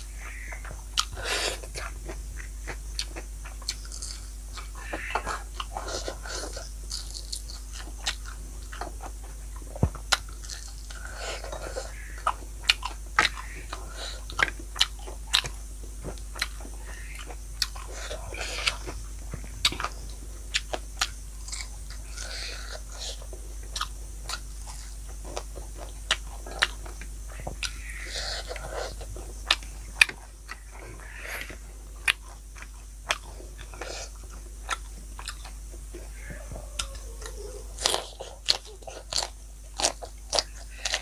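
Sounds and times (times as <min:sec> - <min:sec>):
chewing with crunches: 0:00.0 - 0:41.0.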